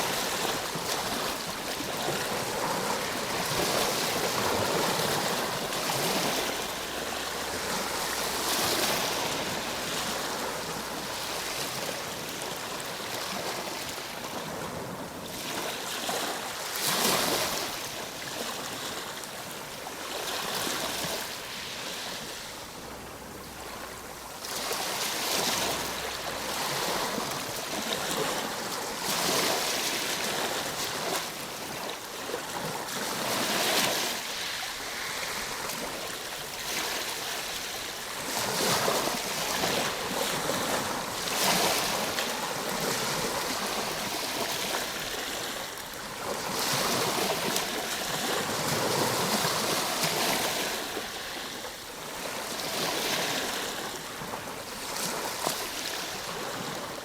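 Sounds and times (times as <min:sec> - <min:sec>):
ocean surf breaking: 0:20.4 - 0:54.3.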